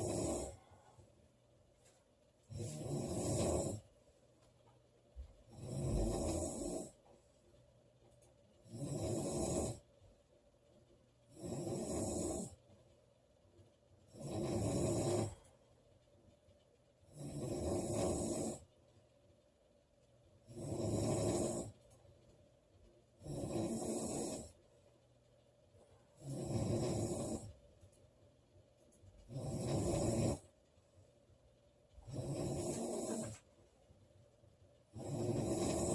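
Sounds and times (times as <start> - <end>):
woman snoring loudly: 0.0 - 0.6, 2.5 - 3.8, 5.5 - 6.9, 8.7 - 9.8, 11.3 - 12.5, 14.1 - 15.4, 17.1 - 18.6, 20.5 - 21.7, 23.2 - 24.5, 26.2 - 27.5, 29.3 - 30.4, 32.1 - 33.4, 35.0 - 35.9.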